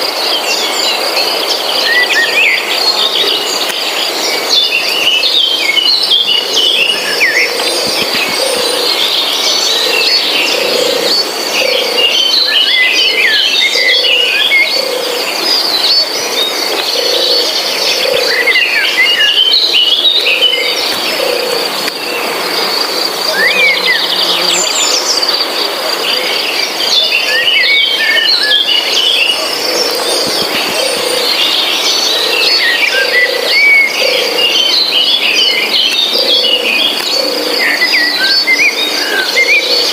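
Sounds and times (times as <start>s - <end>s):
songbirds chirping: 0.0s - 39.9s
low pulsing call: 16.8s - 26.4s
high insect trill: 20.1s - 26.0s.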